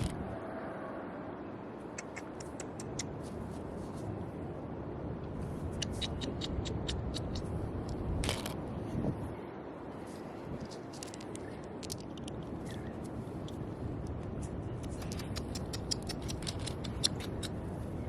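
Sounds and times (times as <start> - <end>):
pebbles and shells clicking: 10.5 - 14.2, 14.8 - 17.6.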